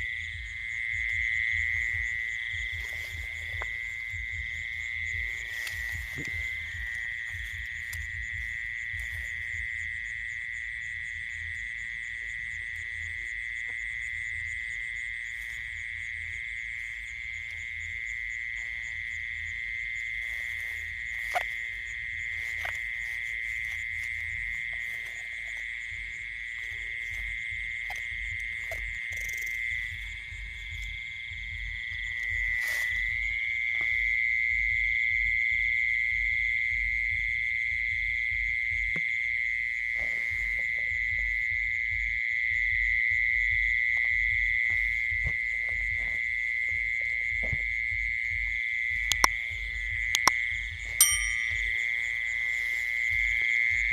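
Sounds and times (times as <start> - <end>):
frogs calling: 0.0 - 53.9
insects trilling: 0.0 - 53.9
sharp click: 50.2 - 50.4.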